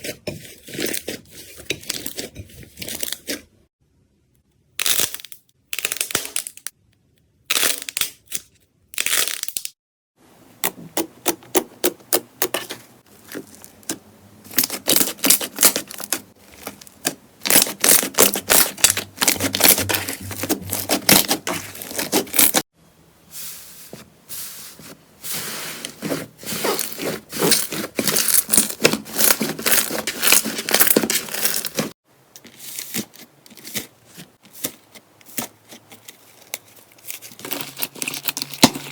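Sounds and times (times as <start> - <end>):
slime crackling and popping: 17.4 - 22.6.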